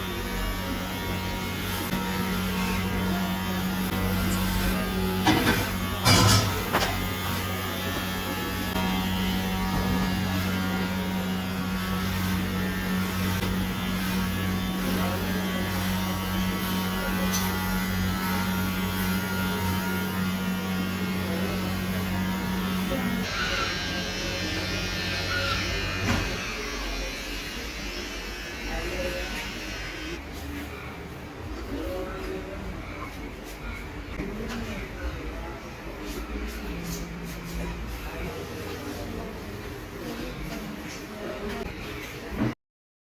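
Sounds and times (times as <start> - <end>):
electric hair clippers buzzing: 0.0 - 30.2.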